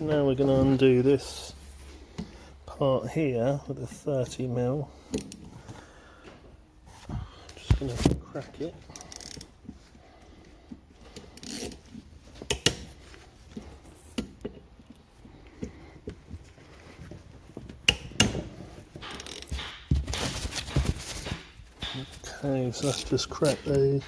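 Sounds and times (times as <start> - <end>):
hand tools knocking and scraping metal: 16.9 - 24.0.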